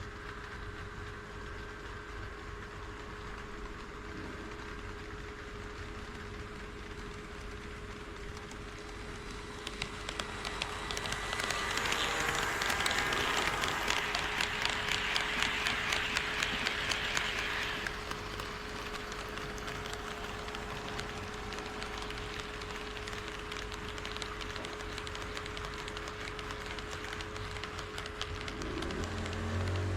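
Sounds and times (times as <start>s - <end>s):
model train wheels clicking on rails: 0.0s - 29.9s
steady hum: 7.9s - 26.4s.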